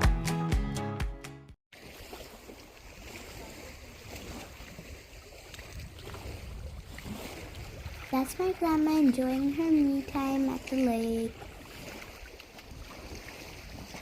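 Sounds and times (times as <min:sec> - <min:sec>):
wind rumble on microphone: 0:03.4 - 0:10.2, 0:11.3 - 0:14.0.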